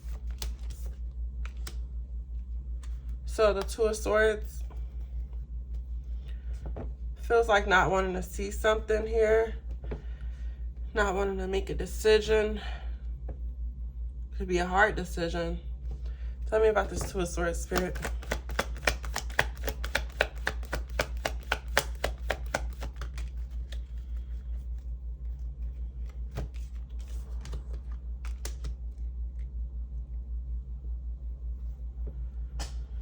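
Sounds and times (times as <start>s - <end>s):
cards being shuffled: 0.0s - 1.8s, 2.8s - 3.8s, 16.8s - 29.5s
steady low hum: 0.0s - 33.0s.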